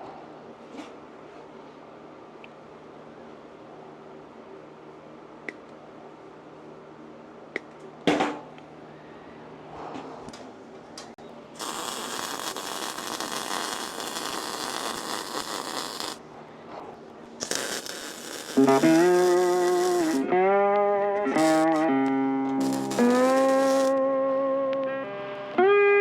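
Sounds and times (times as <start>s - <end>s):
welder crackling hiss: 11.6s - 16.2s, 17.4s - 20.3s, 21.3s - 24.0s.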